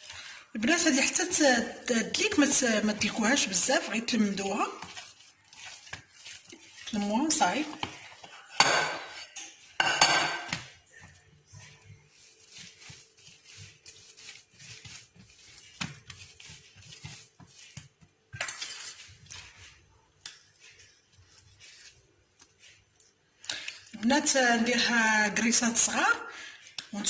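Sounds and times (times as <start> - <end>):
dough scraping in a bowl: 0.0 - 23.0, 23.8 - 26.2
bowl and utensils clinking: 8.6 - 10.6.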